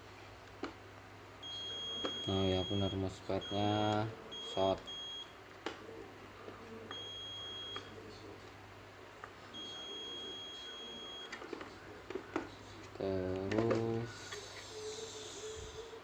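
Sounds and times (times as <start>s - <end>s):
multimeter beeping: 1.4s - 5.3s, 6.9s - 7.9s, 9.6s - 11.4s.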